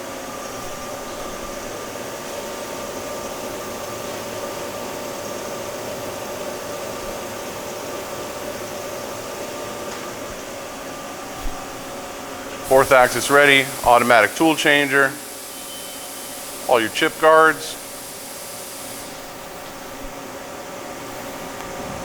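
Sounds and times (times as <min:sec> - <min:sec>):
milling machine whirring hum: 0:00.0 - 0:22.0
steady machine tones: 0:12.6 - 0:18.9.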